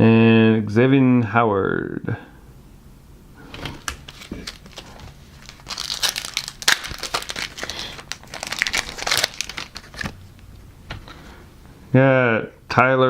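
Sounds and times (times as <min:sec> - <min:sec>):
plastic wrapper crinkling and tearing: 0:03.5 - 0:10.7.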